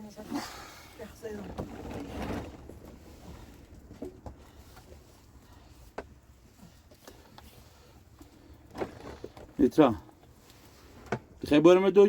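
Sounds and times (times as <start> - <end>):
faint clicks and knocks: 3.8 - 6.2.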